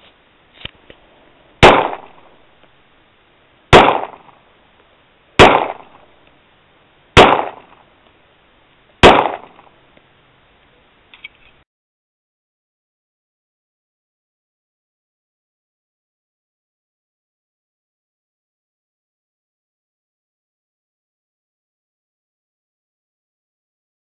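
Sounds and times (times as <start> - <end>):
pistol shots with echo: 1.6 - 2.4, 3.7 - 4.4, 5.4 - 6.1, 7.2 - 7.8, 9.0 - 9.7.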